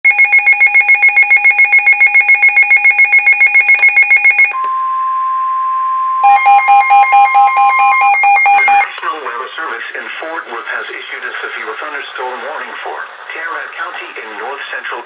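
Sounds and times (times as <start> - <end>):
rapid electronic alarm beeping: 0.0 - 4.6, 6.2 - 8.9
steady alarm tone: 0.0 - 8.9.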